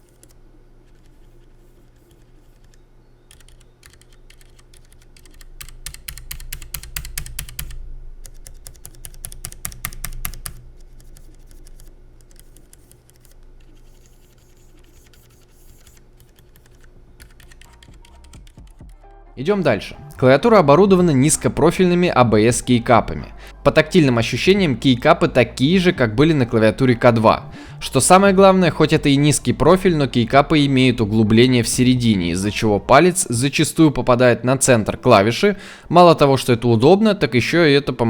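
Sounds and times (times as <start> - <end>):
typing on mechanical keyboard: 2.0 - 19.0.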